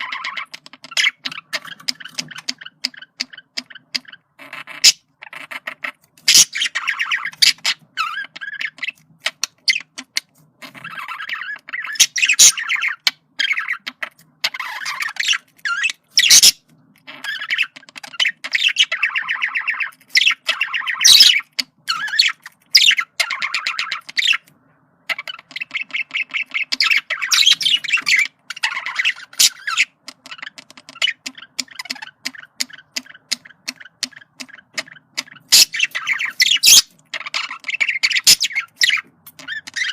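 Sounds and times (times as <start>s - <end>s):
budgerigar chattering: 0.0s - 39.9s.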